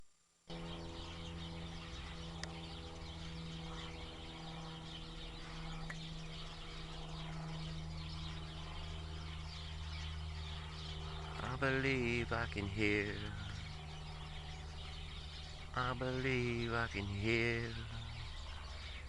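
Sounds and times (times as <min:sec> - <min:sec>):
steady low hum: 0:00.0 - 0:19.0
small birds chirping: 0:00.5 - 0:19.0.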